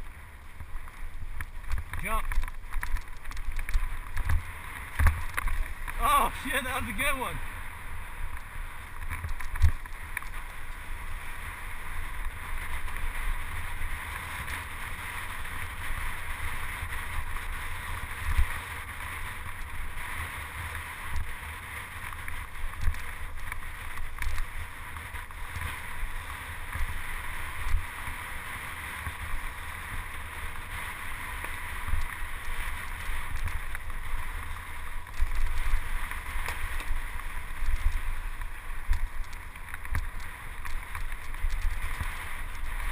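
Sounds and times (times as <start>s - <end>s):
bike tyre noise on dirt: 0.0s - 42.9s.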